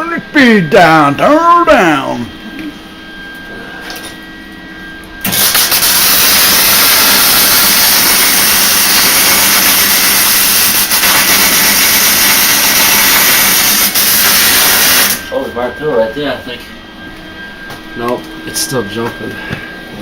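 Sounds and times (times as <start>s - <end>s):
welding arc crackling and sizzling: 5.2s - 15.3s.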